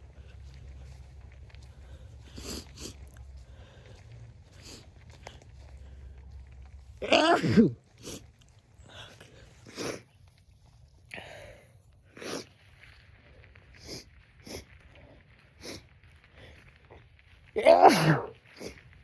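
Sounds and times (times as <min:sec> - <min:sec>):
person sniffing: 0:02.4 - 0:03.0, 0:12.2 - 0:12.5
person sneezing: 0:07.0 - 0:08.2, 0:17.6 - 0:18.7.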